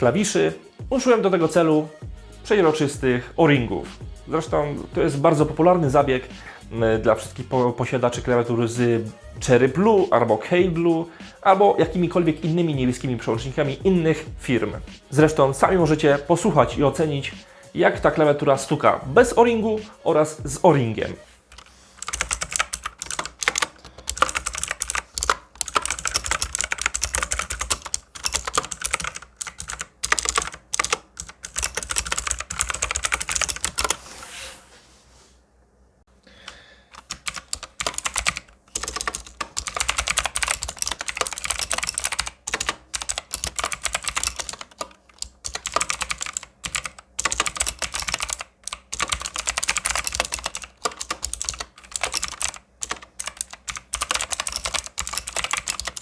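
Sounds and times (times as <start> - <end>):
fast typing on clicky keyboard: 21.5 - 34.0, 36.9 - 56.0.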